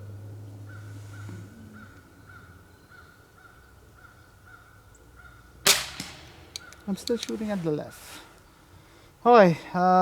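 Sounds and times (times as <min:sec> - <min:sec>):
animal calling: 0:00.6 - 0:05.4.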